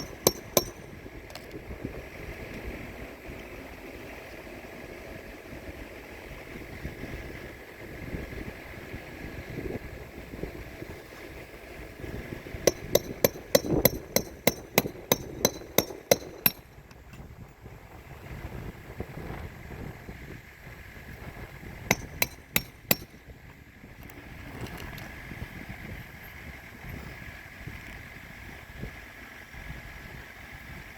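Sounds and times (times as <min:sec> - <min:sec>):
hammer striking nails: 0:00.0 - 0:01.0, 0:12.7 - 0:16.7, 0:21.9 - 0:23.2.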